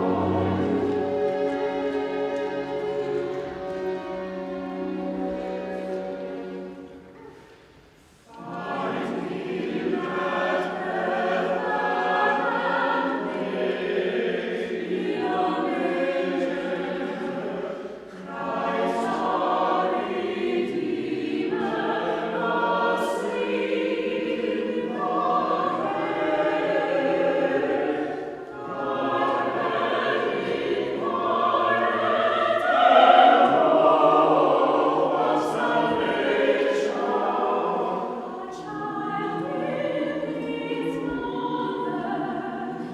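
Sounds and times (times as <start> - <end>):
choir singing: 0.0 - 42.9.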